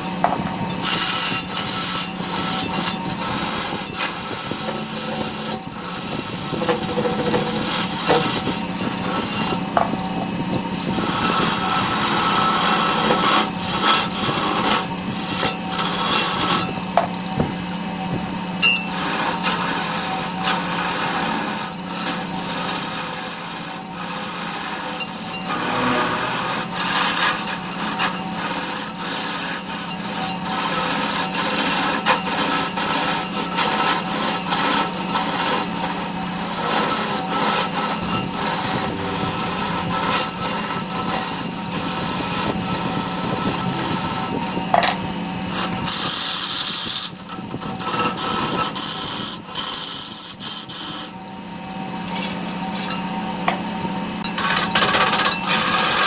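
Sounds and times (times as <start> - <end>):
turning tool scraping wood: 0.0 - 56.0
wood lathe motor hum: 0.0 - 56.0.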